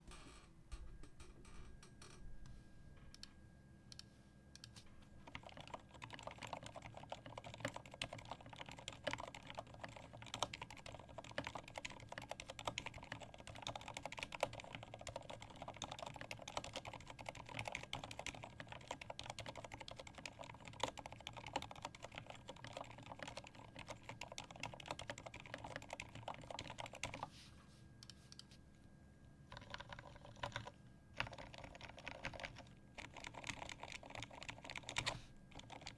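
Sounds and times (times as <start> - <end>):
fast mechanical keyboard typing: 5.2 - 27.3, 29.5 - 35.9.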